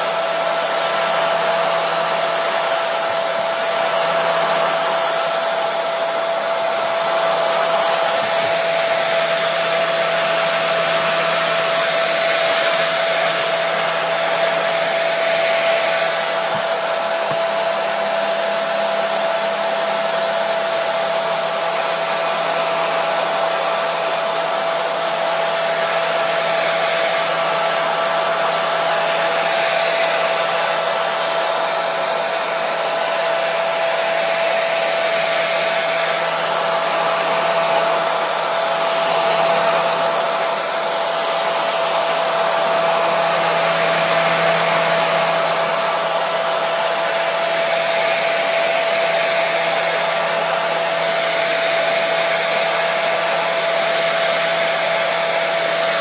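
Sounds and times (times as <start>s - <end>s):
hair dryer running: 0.0s - 56.0s.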